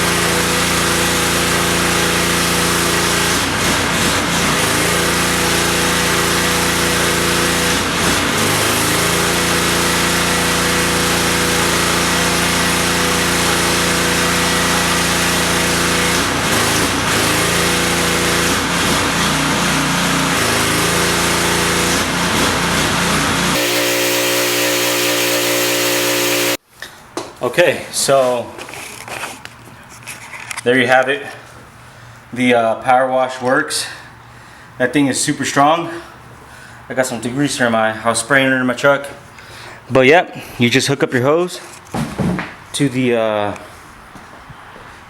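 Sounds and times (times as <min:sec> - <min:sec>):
pressure washer engine running: 0:00.0 - 0:26.6
high-pressure spray hiss: 0:23.6 - 0:26.6.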